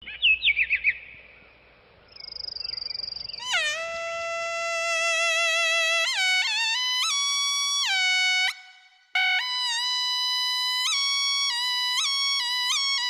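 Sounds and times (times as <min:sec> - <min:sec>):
suona trill and held note: 0:03.4 - 0:13.0.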